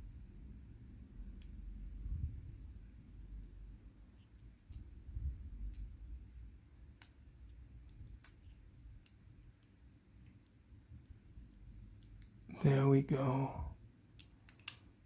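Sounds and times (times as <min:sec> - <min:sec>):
padlock parts clicking: 0:06.9 - 0:09.7, 0:14.1 - 0:15.0.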